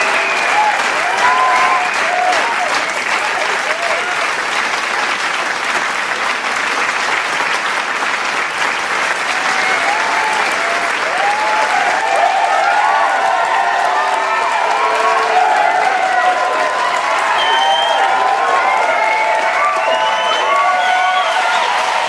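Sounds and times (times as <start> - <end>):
crowd cheering and shouting: 0.0 - 4.5, 9.2 - 22.0
crowd applauding: 0.0 - 22.0.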